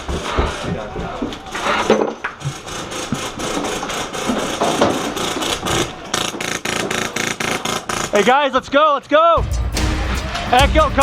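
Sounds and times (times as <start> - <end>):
airsoft guns firing rapidly: 2.4 - 8.5.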